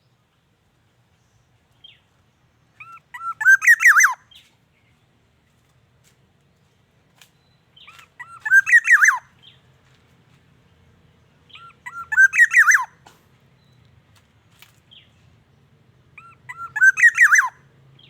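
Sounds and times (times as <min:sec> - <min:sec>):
oriole whistled calls: 0:02.8 - 0:04.3, 0:07.8 - 0:09.3, 0:11.5 - 0:13.0, 0:16.2 - 0:17.6.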